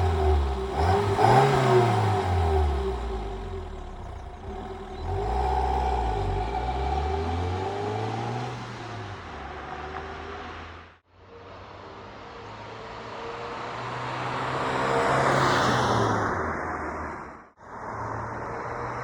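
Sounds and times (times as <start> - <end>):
car engine driving: 0.0 - 11.0.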